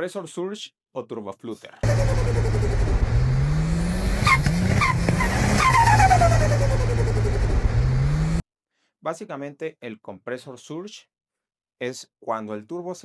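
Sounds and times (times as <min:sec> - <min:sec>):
car engine revving: 0:01.8 - 0:08.4
turbo whistle: 0:04.0 - 0:07.4.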